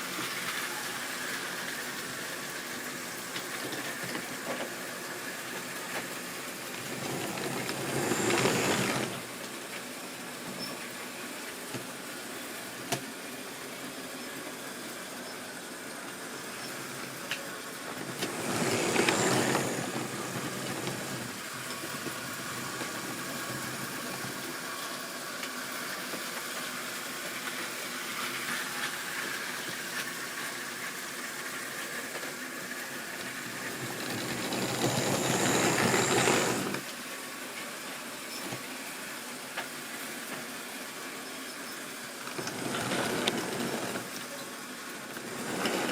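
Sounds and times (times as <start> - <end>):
model train motor whirr: 5.5 - 9.3, 17.9 - 24.5, 33.0 - 36.8, 42.2 - 44.4, 45.0 - 45.9
wheels clicking: 6.7 - 9.3, 18.1 - 24.3, 33.5 - 36.8, 42.3 - 44.4, 45.2 - 45.9.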